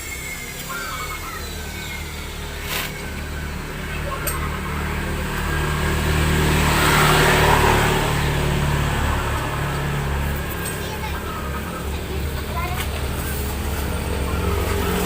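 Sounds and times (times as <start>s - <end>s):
motor vehicle passing by: 0.0s - 15.0s.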